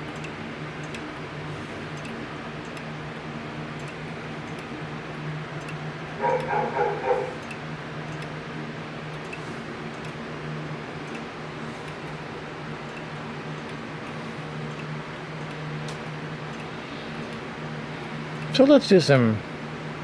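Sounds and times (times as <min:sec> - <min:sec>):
clock ticking: 0:05.6 - 0:08.3
dog yapping: 0:06.2 - 0:07.5.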